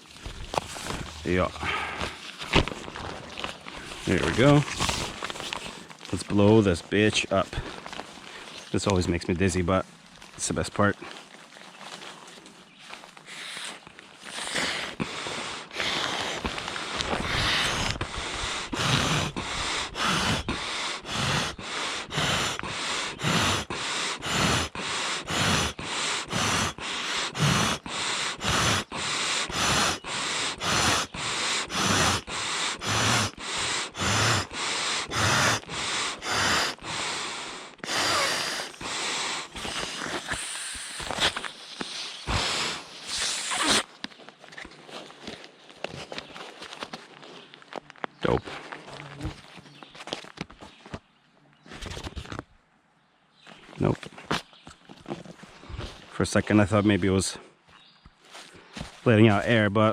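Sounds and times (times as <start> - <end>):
person blowing into valve: 13.3 - 43.9.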